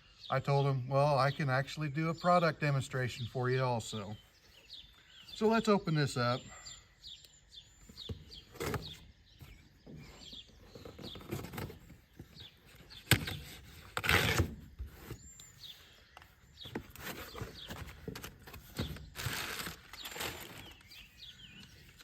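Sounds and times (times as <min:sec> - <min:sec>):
birds chirping: 0:00.0 - 0:22.0
rustling: 0:08.4 - 0:22.0.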